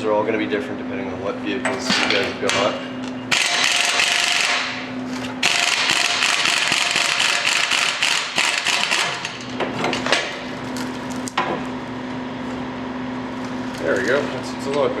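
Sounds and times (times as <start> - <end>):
impact wrench hammering: 3.3 - 4.8, 5.4 - 9.5.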